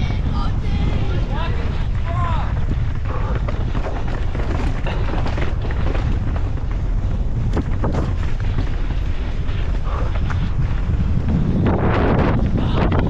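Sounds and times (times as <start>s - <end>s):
wind buffeting microphone: 0.0s - 13.0s
bike clattering over rough trail: 0.2s - 13.0s.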